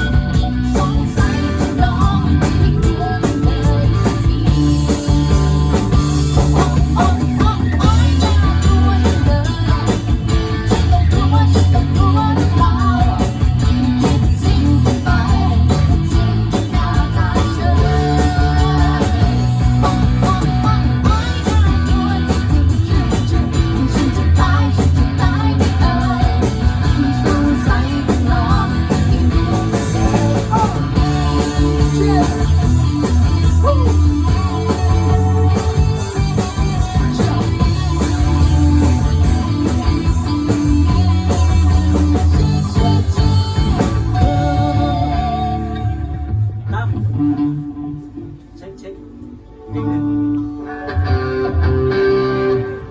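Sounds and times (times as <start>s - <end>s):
heavy bass: 0.0s - 48.4s
person singing: 0.0s - 48.4s, 49.0s - 52.5s
electric guitar: 0.0s - 52.9s
live rock band playing: 0.0s - 52.9s.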